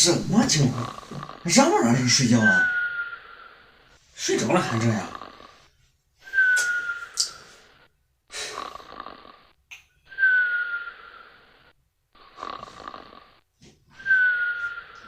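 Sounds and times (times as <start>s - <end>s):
woman snoring: 0.2s - 5.7s, 8.3s - 9.6s, 10.2s - 13.4s
high whistling tone: 2.2s - 3.6s, 6.2s - 7.6s, 10.0s - 11.4s, 13.9s - 15.0s.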